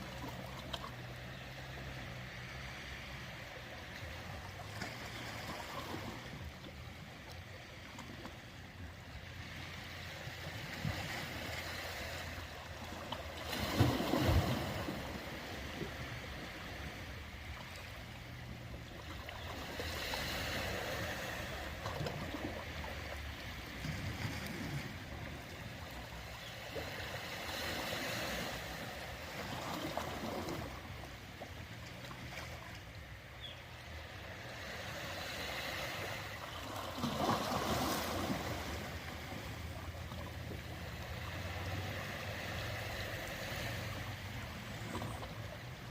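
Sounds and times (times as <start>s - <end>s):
ocean waves washing in: 0.0s - 31.4s, 32.1s - 45.9s.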